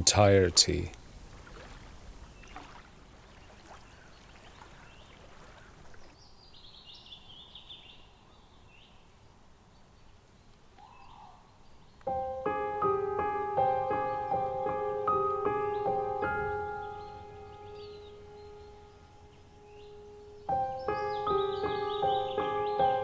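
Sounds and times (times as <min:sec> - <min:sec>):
bird chirping: 0:00.0 - 0:12.2, 0:13.9 - 0:23.0
faint outdoor ambience: 0:00.0 - 0:23.0
piano music: 0:12.1 - 0:23.0.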